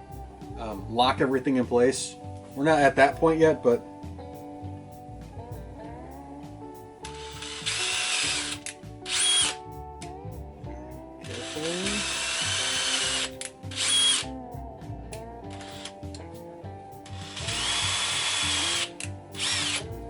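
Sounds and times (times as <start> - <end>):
background music: 0.0 - 20.0
power drill boring into plastic: 7.2 - 9.6, 11.3 - 14.2, 17.2 - 19.8.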